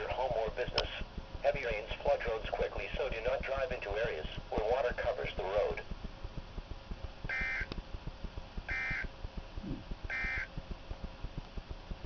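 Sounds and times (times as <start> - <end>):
digital data burst squawks: 8.7 - 9.1, 10.1 - 10.5.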